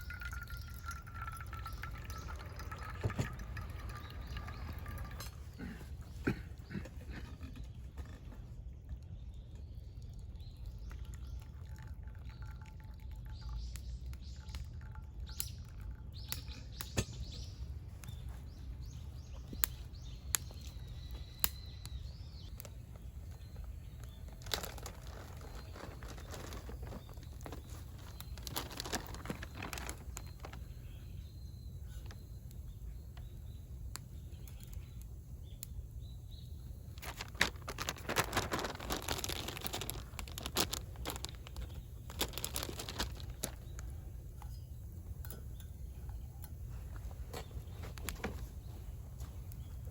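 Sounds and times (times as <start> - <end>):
birds chirping: 0.0 - 49.9
rustling: 23.5 - 30.7, 36.9 - 43.8.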